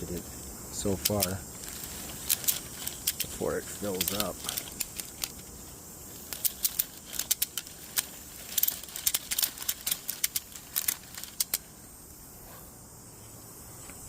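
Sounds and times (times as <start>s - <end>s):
ratchet strap clicking: 0.9s - 5.4s, 6.3s - 11.6s.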